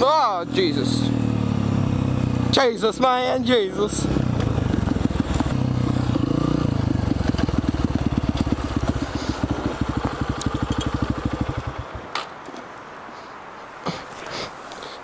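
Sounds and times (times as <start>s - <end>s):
motorcycle engine running and stopping: 4.0s - 12.0s.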